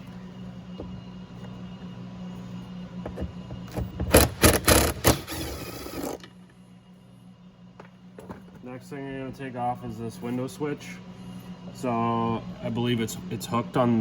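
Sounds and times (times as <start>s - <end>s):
steady low hum: 0.0s - 14.0s
mechanical rattling clatter: 4.1s - 6.2s.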